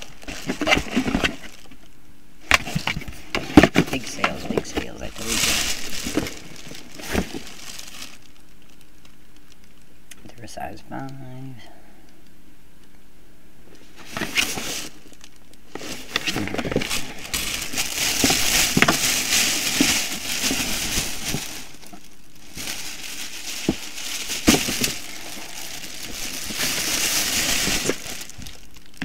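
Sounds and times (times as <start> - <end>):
packaging crinkling: 0.0 - 1.9, 2.5 - 9.9, 14.0 - 29.0.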